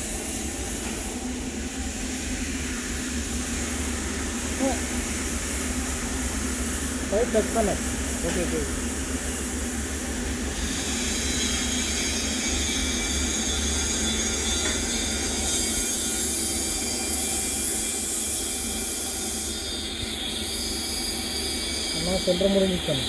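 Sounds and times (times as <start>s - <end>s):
welding arc hissing: 2.0s - 11.0s.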